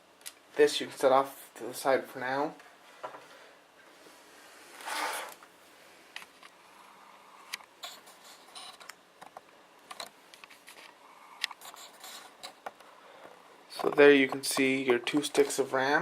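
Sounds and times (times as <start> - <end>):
short scrape: 4.3 - 5.4.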